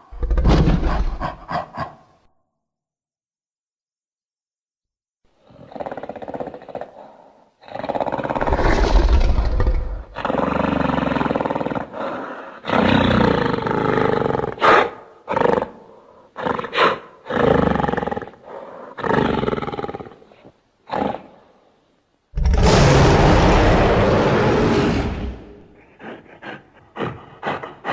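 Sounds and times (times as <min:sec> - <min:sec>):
monster roars and growls: 0:08.0 - 0:11.8, 0:22.4 - 0:25.8.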